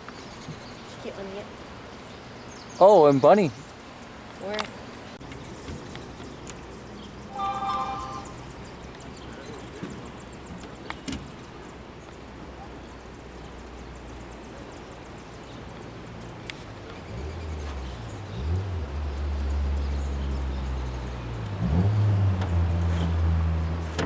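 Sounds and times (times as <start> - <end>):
boat engine running: 15.5 - 24.0.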